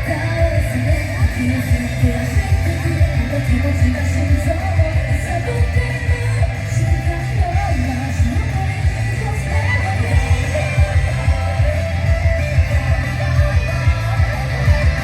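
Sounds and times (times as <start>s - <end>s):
heavy bass beat: 0.0s - 15.0s
person singing: 0.0s - 15.0s
rock song: 0.0s - 15.0s.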